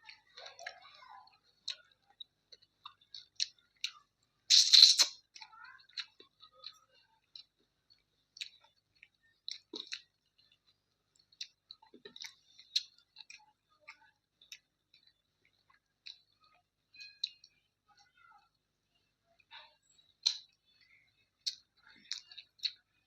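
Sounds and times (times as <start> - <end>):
wet chewing: 0.0 - 17.6, 19.4 - 22.9
lip smacks: 4.5 - 5.2
mouth clicks: 4.5 - 5.2.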